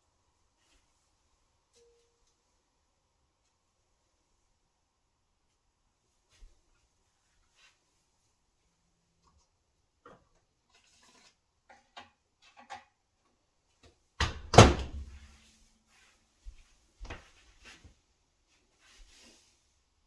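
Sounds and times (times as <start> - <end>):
door shutting with clunk: 14.2 - 15.2.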